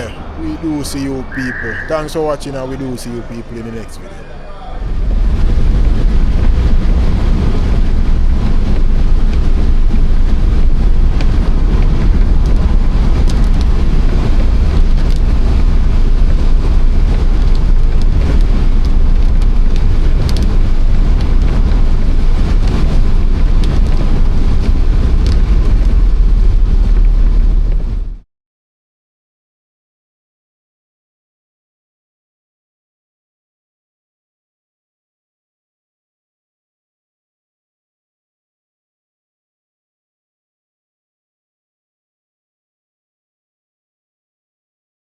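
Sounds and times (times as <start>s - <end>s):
wind buffeting microphone: 4.8s - 28.2s.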